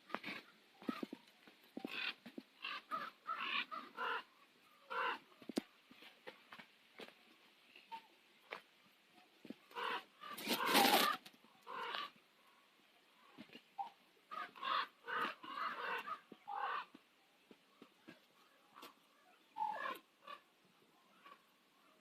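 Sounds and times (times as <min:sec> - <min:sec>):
ravens croaking: 0:00.0 - 0:06.1, 0:09.5 - 0:17.0, 0:18.0 - 0:22.0.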